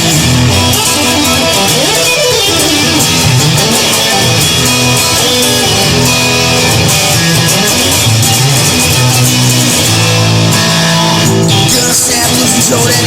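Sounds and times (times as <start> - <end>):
electric guitar: 0.0 - 13.0
instrumental rock music: 0.0 - 13.0.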